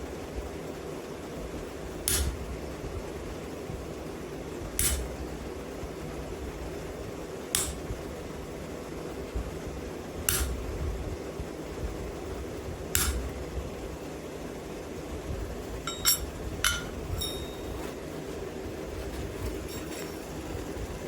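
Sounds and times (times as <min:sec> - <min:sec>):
fan hum: 0:00.0 - 0:21.0
hammer tapping steel tool: 0:15.9 - 0:18.0, 0:19.6 - 0:20.2.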